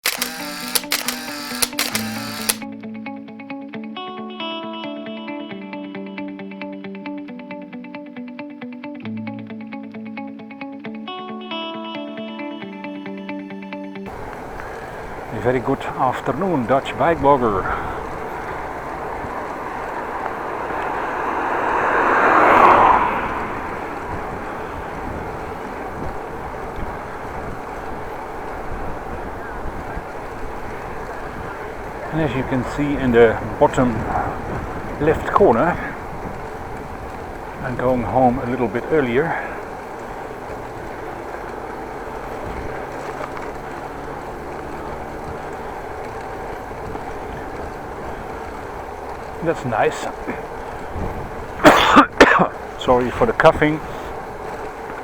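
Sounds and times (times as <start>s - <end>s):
wind and road noise: 0.0s - 2.7s, 14.1s - 55.0s
vehicle passing close by: 14.1s - 55.0s.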